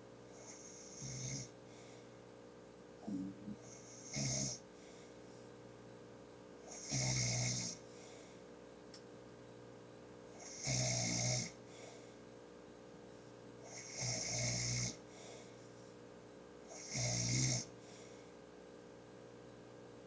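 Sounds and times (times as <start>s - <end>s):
man snoring: 0.4s - 1.5s, 3.0s - 4.6s, 6.7s - 7.8s, 10.4s - 11.6s, 13.7s - 15.0s, 16.7s - 17.7s.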